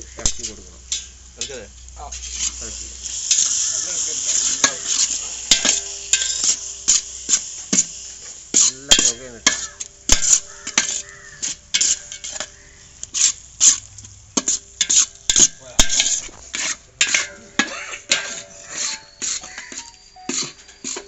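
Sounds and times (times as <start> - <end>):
masala sizzling: 0.0 - 21.0
spoon scraping a cooking pot: 8.5 - 21.0.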